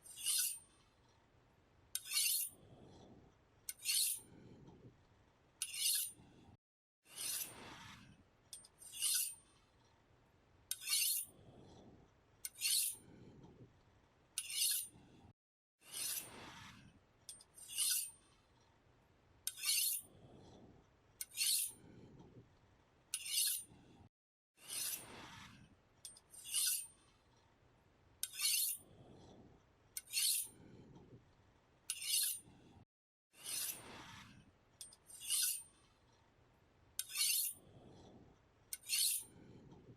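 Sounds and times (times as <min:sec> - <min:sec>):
knife scraping on sharpener: 0:00.0 - 0:00.7, 0:02.0 - 0:02.6, 0:03.7 - 0:04.3, 0:05.6 - 0:06.2, 0:07.1 - 0:07.6, 0:08.6 - 0:09.4, 0:10.7 - 0:11.3, 0:12.4 - 0:13.0, 0:14.4 - 0:14.9, 0:15.9 - 0:16.3, 0:17.3 - 0:18.2, 0:19.5 - 0:20.1, 0:21.2 - 0:21.8, 0:23.1 - 0:23.7, 0:24.6 - 0:25.1, 0:26.1 - 0:26.9, 0:28.2 - 0:28.9, 0:30.0 - 0:30.6, 0:31.9 - 0:32.5, 0:33.4 - 0:34.1, 0:34.8 - 0:35.7, 0:37.0 - 0:37.6, 0:38.7 - 0:39.4.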